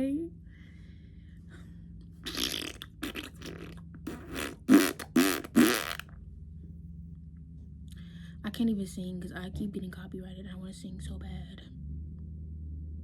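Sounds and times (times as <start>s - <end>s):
woman making buzzy vocal sounds: 2.2s - 6.1s.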